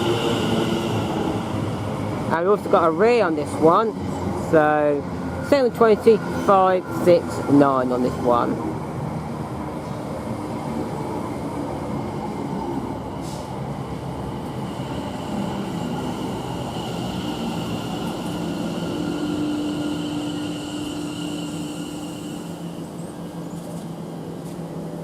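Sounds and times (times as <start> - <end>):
train wheels rumbling: 0.0 - 25.0
train motor whine: 17.2 - 23.8.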